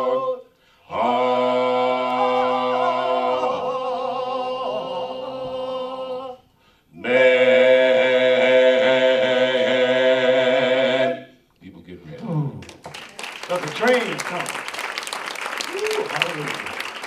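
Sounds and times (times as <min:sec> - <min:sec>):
vocal group singing a cappella: 0:00.0 - 0:11.5.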